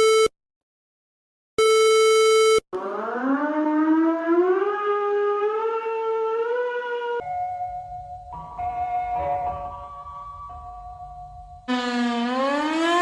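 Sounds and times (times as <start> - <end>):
siren winding up: 11.7 - 13.0.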